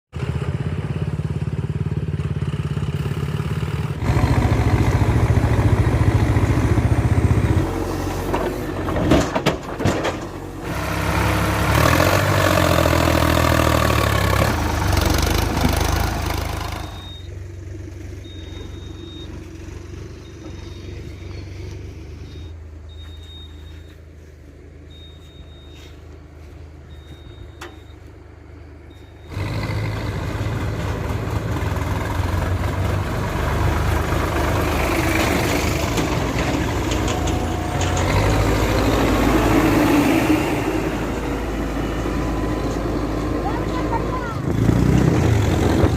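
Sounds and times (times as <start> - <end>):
diesel engines revving: 0.1 - 45.9
reversing alarm beeping: 16.7 - 17.4, 18.2 - 24.0, 24.8 - 26.2, 26.8 - 28.2, 28.8 - 29.5.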